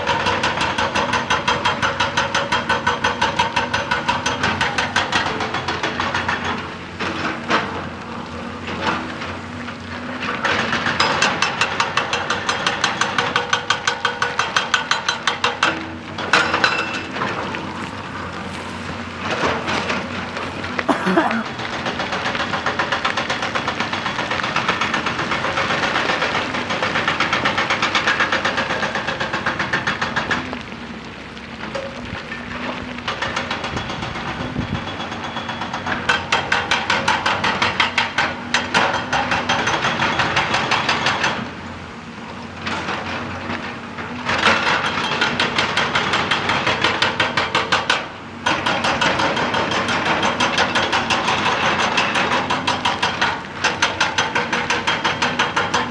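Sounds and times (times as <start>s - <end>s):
hydraulic breaker hammering rock: 0.0s - 9.1s, 44.3s - 55.9s.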